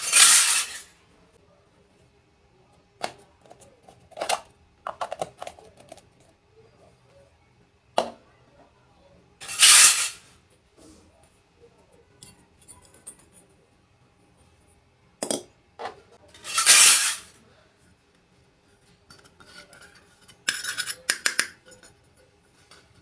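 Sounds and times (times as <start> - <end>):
small steel pieces clinking: 16.4 - 17.2.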